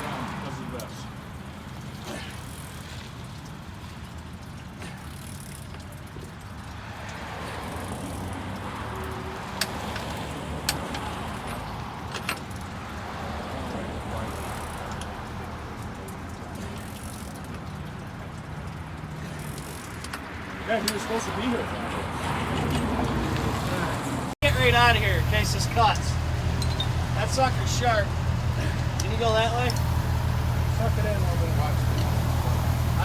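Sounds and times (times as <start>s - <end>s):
engine running at low speed: 23.3s - 33.0s.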